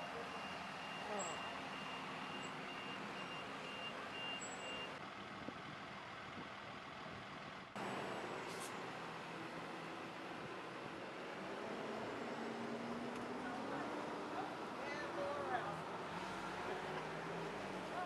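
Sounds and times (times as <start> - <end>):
vehicle reversing alarm beeping: 0.0 - 5.0
outdoor vehicle noise: 0.0 - 18.0.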